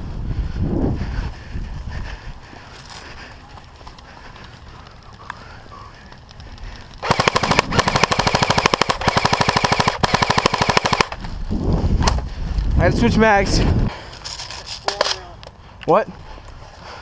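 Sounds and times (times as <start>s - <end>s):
airsoft rifle firing full-auto: 7.0s - 11.2s.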